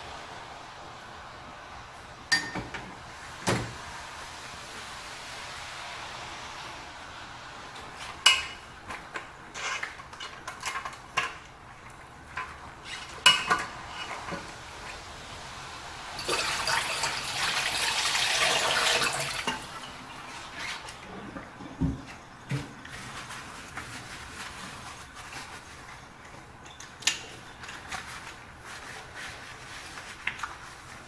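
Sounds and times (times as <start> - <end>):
dishes clinking in a sink: 2.3 - 3.7, 8.2 - 9.0, 12.3 - 14.5, 21.0 - 22.9.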